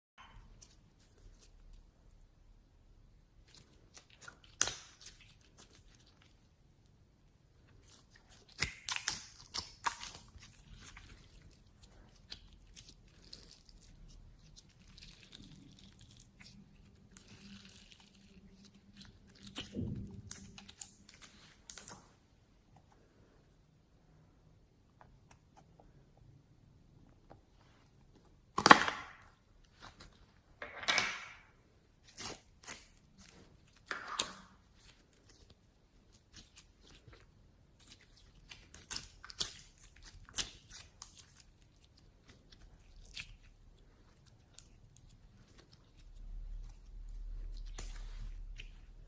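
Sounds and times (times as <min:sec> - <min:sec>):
slime crackling: 0:07.6 - 0:22.1, 0:32.0 - 0:49.0.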